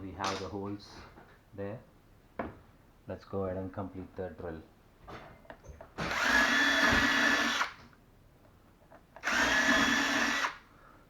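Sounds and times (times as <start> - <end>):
power drill whining: 6.0 - 7.8, 9.2 - 10.6.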